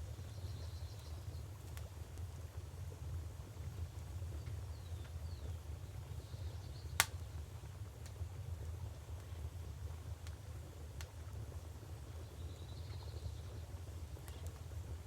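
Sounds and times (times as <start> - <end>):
wood fire crackling: 0.9 - 6.0, 6.8 - 15.0
sharp fire pop: 7.0 - 7.2.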